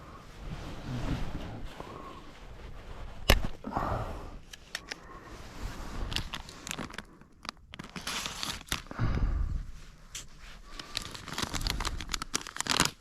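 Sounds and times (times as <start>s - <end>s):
snack packaging crinkling: 6.1s - 9.0s, 10.2s - 13.0s.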